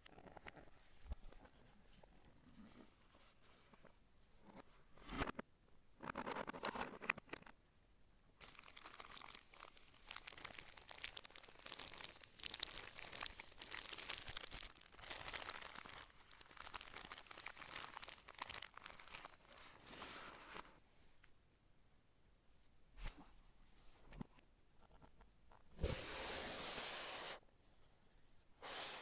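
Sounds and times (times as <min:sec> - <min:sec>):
packaging crinkling: 0:08.4 - 0:19.8.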